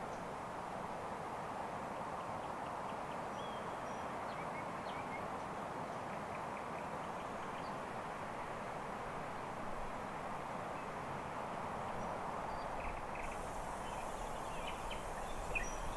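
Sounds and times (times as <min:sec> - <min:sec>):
bird chirps: 0:12.8 - 0:15.9.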